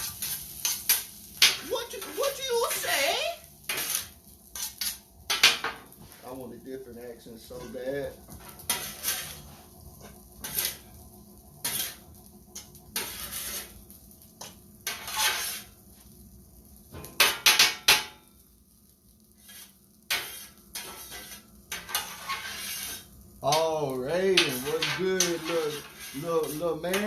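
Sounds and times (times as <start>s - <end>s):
metal utensil scraping a pan: 0.0s - 6.4s, 7.4s - 11.0s, 11.6s - 13.8s, 14.4s - 15.8s, 19.4s - 27.0s.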